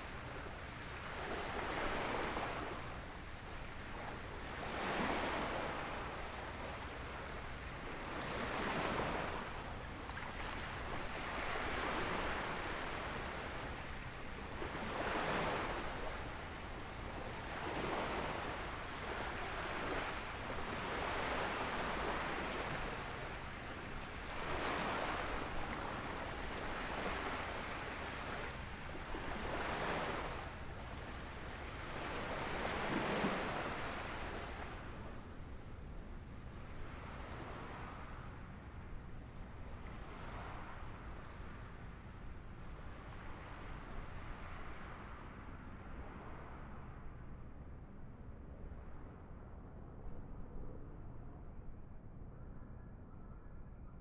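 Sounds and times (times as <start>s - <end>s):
small waves breaking on beach: 0.0s - 35.5s.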